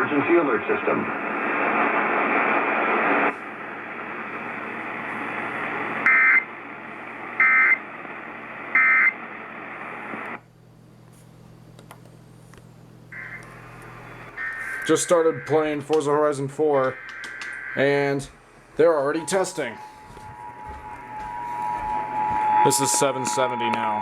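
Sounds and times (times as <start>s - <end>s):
radio hiss: 0.0s - 10.4s, 13.1s - 24.0s
faint low hum: 9.3s - 24.0s
two-tone data bursts: 14.3s - 15.8s, 16.8s - 24.0s.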